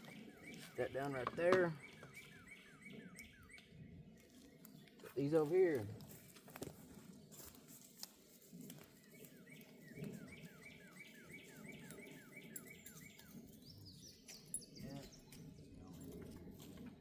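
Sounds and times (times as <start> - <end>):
songbird whistling: 0.0 - 3.8, 9.0 - 15.6.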